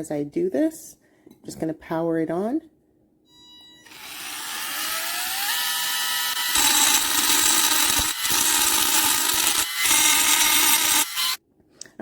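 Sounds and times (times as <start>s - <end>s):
engraver bit grinding glass: 3.8s - 11.4s
rotary engraver motor whining: 3.8s - 11.4s.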